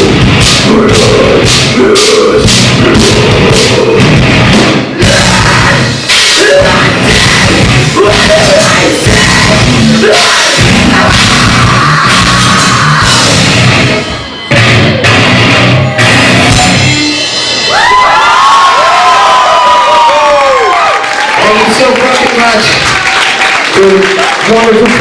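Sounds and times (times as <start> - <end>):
heavy rock band playing live: 0.0 - 18.1
drums with crashing cymbals: 0.0 - 18.2.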